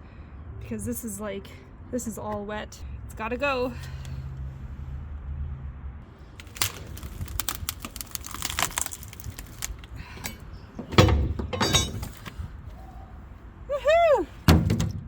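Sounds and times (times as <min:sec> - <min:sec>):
wood cracking and scraping: 0:06.4 - 0:12.4
heavy thud: 0:10.8 - 0:12.2.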